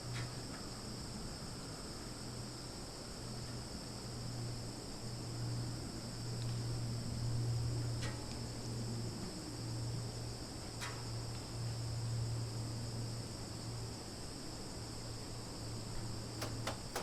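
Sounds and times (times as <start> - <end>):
crickets and cicadas buzzing: 0.0 - 17.0
faint short clicks: 16.4 - 17.0.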